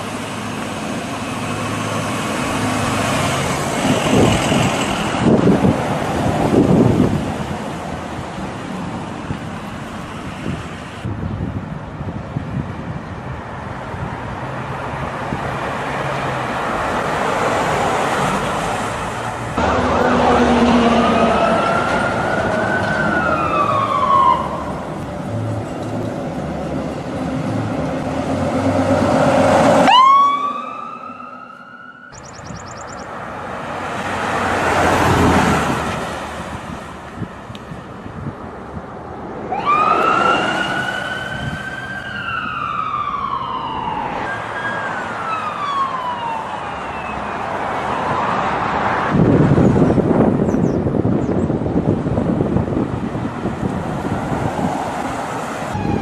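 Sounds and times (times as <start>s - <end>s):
traffic noise: 0.0s - 56.0s
rushing noise: 14.6s - 31.3s
ambulance sirens: 19.6s - 33.2s, 39.4s - 49.1s, 54.0s - 56.0s.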